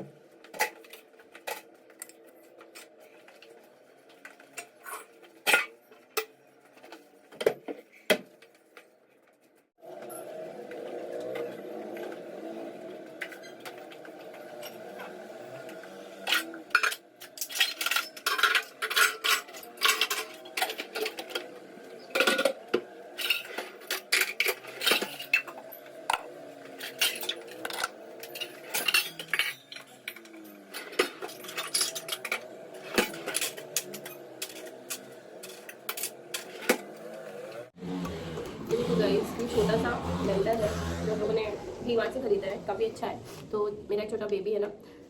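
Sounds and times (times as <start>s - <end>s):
dishes and cutlery clattering: 16.2s - 37.2s.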